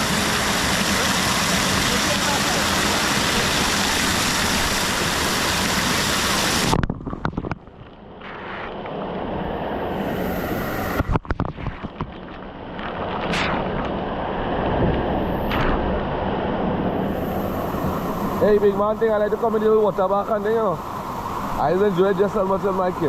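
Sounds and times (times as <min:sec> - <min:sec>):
rushing splashing water: 0:00.0 - 0:23.0.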